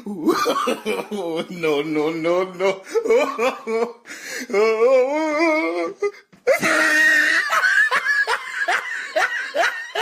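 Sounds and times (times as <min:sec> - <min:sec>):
wavering voice-like wail: 0:04.5 - 0:10.0.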